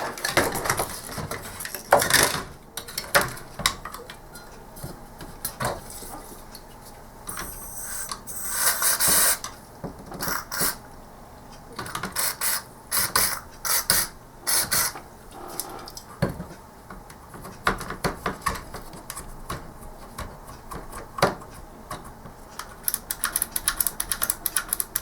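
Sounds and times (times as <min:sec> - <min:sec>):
aerosol spray hiss: 0:08.6 - 0:09.4.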